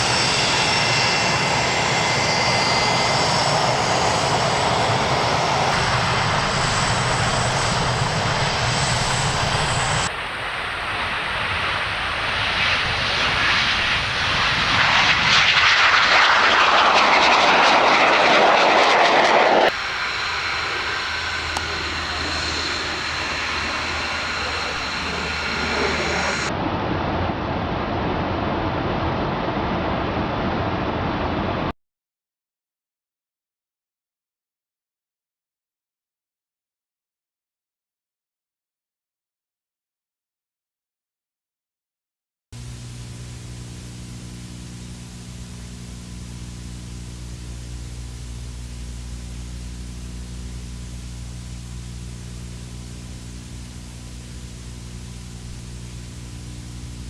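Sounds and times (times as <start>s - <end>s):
jet aircraft rushing past: 0.0s - 31.7s
jet engine whine: 0.0s - 31.7s, 42.6s - 57.0s.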